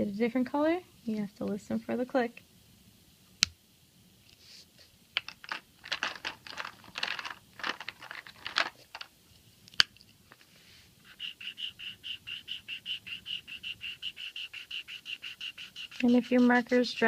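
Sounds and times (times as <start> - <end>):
high-pitched pulsing chirping: 11.0 - 17.0
marker scratching on carton: 11.0 - 17.0.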